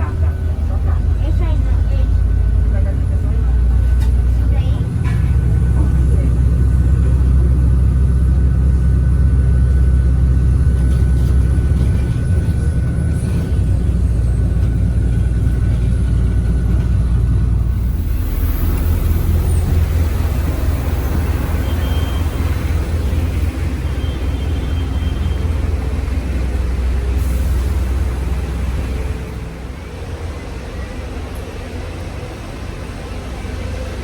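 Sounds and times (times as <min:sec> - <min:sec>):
vehicle engine and wheel rumble: 0:00.0 - 0:34.0.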